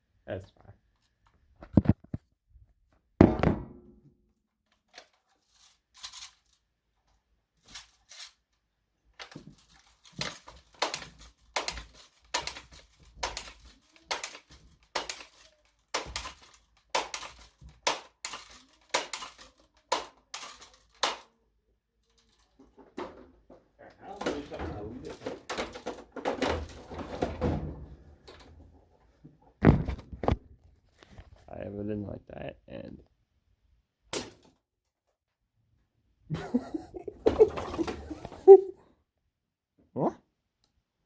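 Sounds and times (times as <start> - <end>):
scraping and rustling handling noises: 4.5 - 21.4, 22.0 - 31.5.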